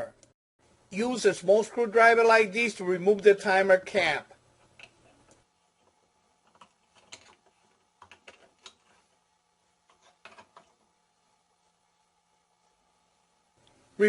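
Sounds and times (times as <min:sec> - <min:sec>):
screwdriver clicking and scraping plastic: 0:04.6 - 0:09.0.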